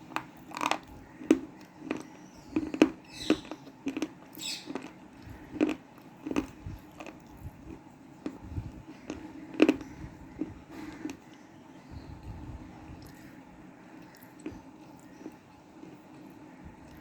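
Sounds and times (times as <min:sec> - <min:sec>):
person crunching hard pieces: 0:00.0 - 0:11.2.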